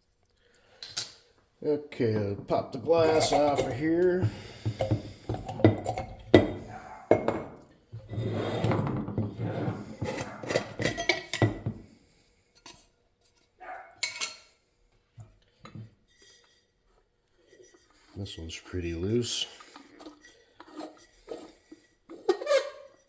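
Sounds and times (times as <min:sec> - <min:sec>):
glass and metal clinking and scraping: 0:02.0 - 0:11.8, 0:12.6 - 0:14.5, 0:19.0 - 0:23.0.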